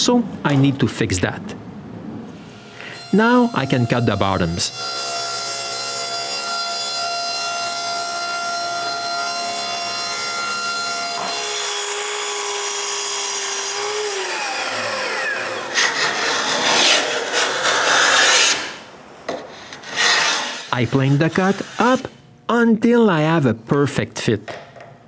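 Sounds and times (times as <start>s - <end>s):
power saw cutting wood: 2.5s - 22.2s
saw winding down whine: 2.6s - 18.8s
hand plane shaving wood: 13.8s - 22.2s.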